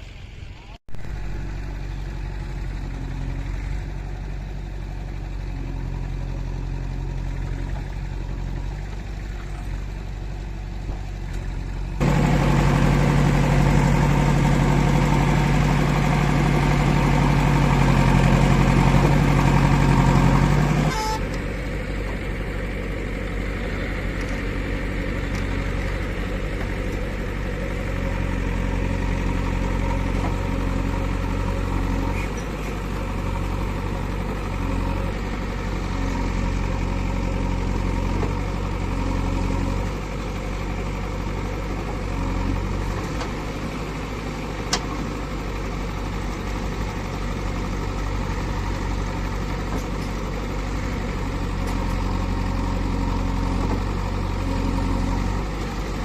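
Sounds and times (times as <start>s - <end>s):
diesel engine running: 0.0s - 56.0s.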